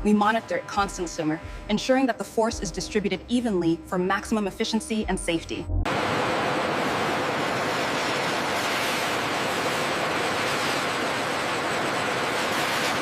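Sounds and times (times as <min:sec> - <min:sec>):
steady rushing hiss: 0:05.9 - 0:13.0.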